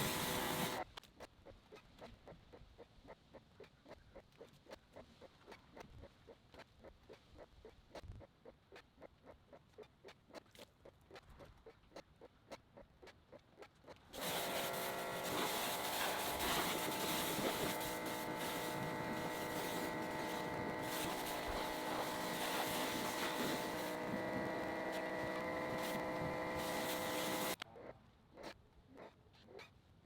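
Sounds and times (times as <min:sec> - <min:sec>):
machine motor humming with hiss: 0:00.0 - 0:00.8, 0:14.2 - 0:27.6
faint rhythmic ticking: 0:00.0 - 0:27.6.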